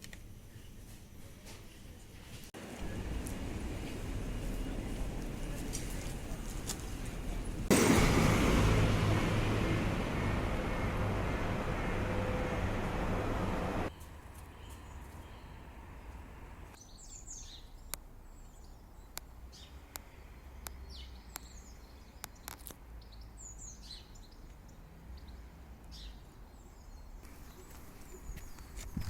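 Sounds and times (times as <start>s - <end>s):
low outdoor rumble: 2.6s - 13.9s
birds chirping: 27.0s - 29.0s.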